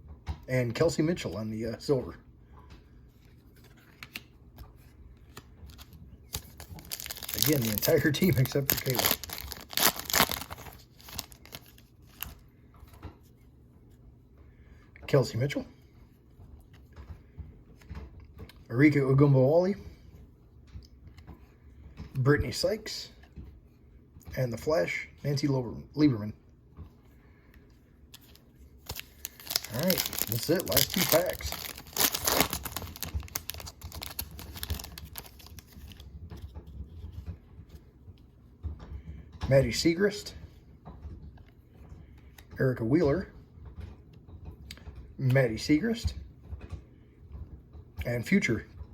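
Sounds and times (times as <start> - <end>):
cards rustling and clicking: 3.2 - 12.4, 28.1 - 37.0
foil wrapper tearing and crinkling: 5.7 - 12.4, 28.9 - 36.0
trading cards clicking and tapping: 6.3 - 12.3.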